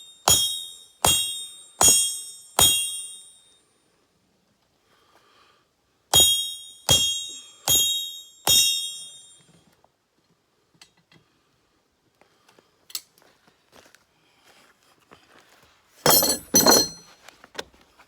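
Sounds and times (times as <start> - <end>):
hammer blows on anvil: 0.3 - 3.3, 6.2 - 9.4, 16.1 - 17.0
light metal clink: 16.1 - 17.1.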